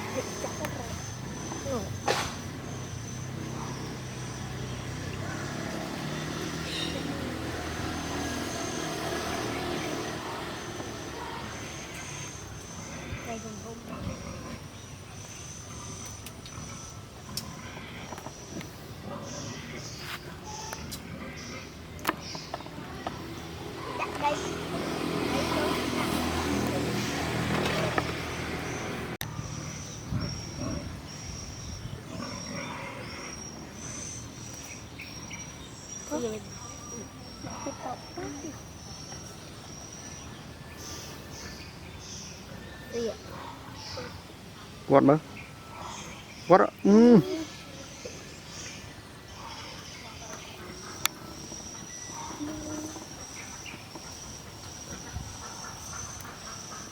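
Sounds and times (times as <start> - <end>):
faint animal calls: 49.3 - 56.9.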